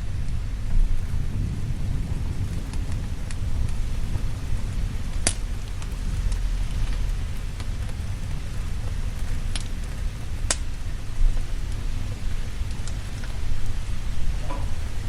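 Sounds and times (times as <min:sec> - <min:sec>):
steady rain: 0:00.0 - 0:15.0
wood fire crackles: 0:00.0 - 0:15.0
deep low rumble: 0:12.8 - 0:15.0.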